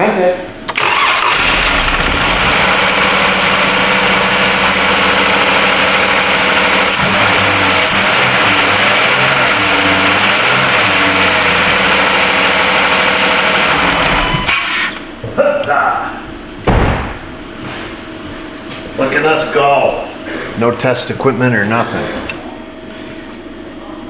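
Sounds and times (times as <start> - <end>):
car engine running: 0.8 - 14.6.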